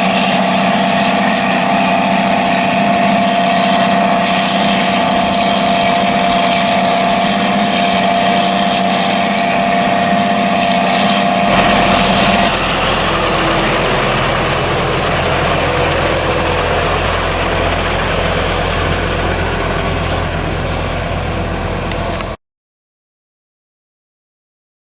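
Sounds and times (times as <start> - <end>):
deep engine rumble: 11.5 - 22.4
engine drone with high whine: 11.5 - 22.4.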